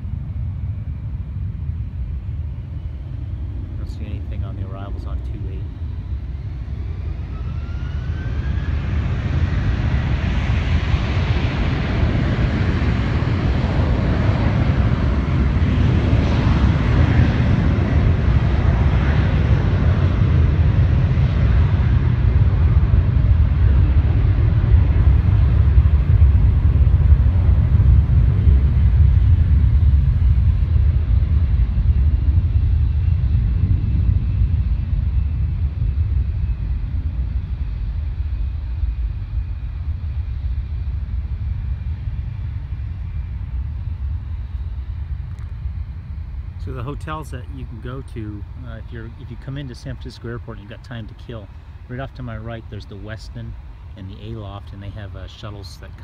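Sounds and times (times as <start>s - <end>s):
jet engines roaring: 0.0s - 56.0s.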